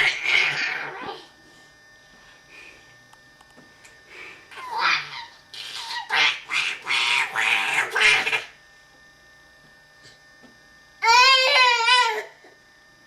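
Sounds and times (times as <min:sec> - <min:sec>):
baby squealing: 0:04.6 - 0:06.4.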